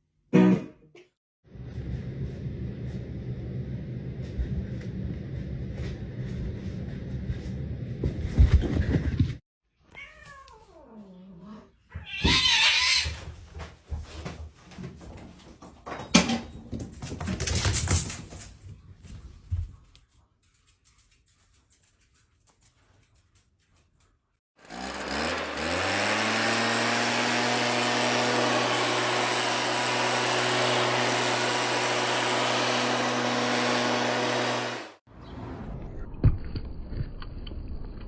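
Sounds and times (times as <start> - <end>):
cat meowing: 9.9 - 11.2, 11.9 - 13.1.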